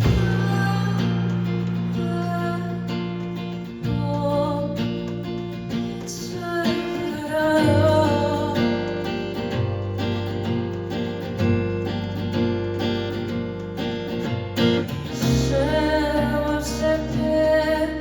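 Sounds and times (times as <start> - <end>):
deep low bass part: 0.0 - 2.9
strummed acoustic guitar: 0.0 - 18.0.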